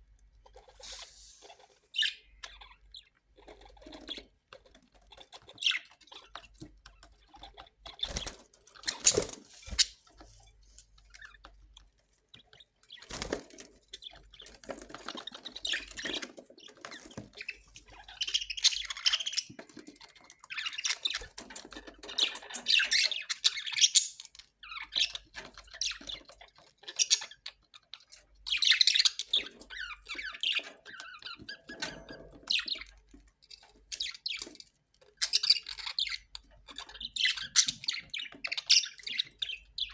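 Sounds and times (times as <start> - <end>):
parrots squawking and chattering: 0.5 - 4.3, 4.9 - 10.2, 35.2 - 39.9.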